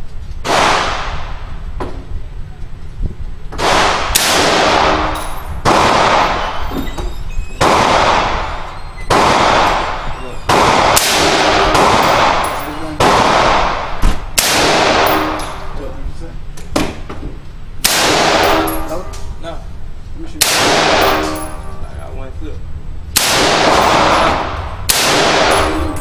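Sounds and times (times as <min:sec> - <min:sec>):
rifle shots: 0:00.4 - 0:01.3, 0:03.6 - 0:06.6, 0:07.6 - 0:15.7, 0:17.8 - 0:18.9, 0:20.4 - 0:21.5, 0:23.2 - 0:26.0.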